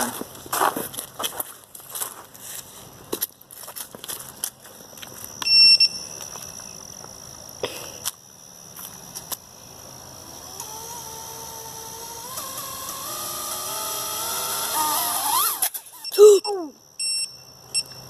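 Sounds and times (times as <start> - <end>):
high electronic beep: 5.4 - 6.2, 16.0 - 18.0
drone motors whining: 10.0 - 16.4.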